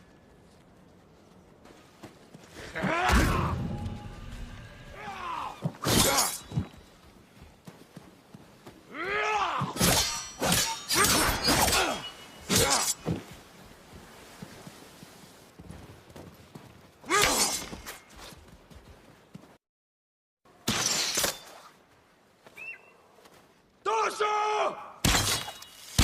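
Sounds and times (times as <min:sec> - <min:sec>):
metallic sword clashes: 0:09.8 - 0:13.0.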